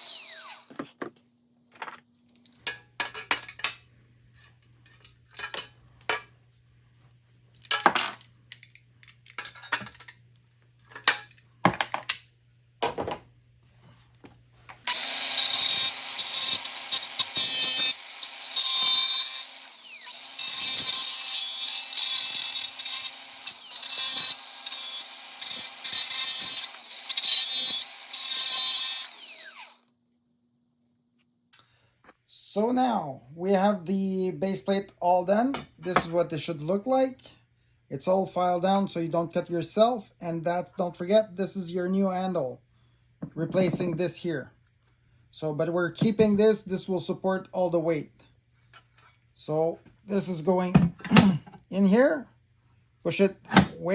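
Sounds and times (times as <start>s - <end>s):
power tool working metal: 0.0s - 0.8s, 14.9s - 29.8s
metal tools clinking: 7.6s - 10.2s.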